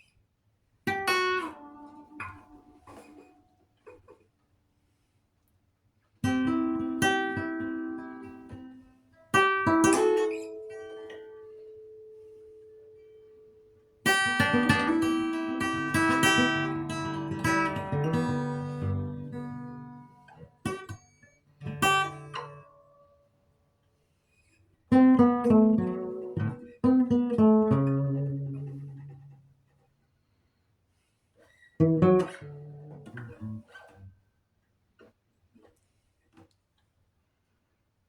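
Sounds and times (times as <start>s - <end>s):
acoustic guitar playing: 0.9s - 3.3s, 6.2s - 12.1s, 14.0s - 22.8s, 24.9s - 29.5s, 31.8s - 34.0s.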